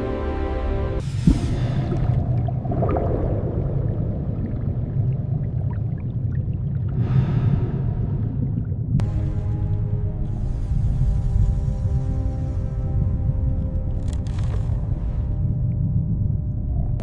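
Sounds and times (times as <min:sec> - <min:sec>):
low underwater rumble: 0:01.0 - 0:17.0
sustained music tones: 0:09.0 - 0:17.0.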